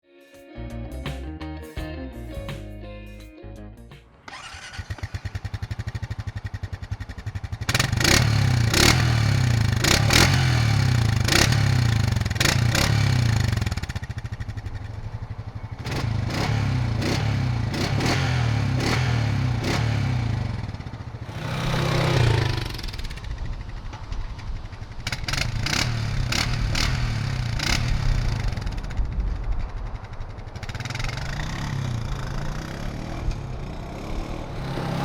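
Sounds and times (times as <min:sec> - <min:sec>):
electric starter cranking engine: 0:04.3 - 0:05.8
quad bike engine running: 0:04.3 - 0:35.0.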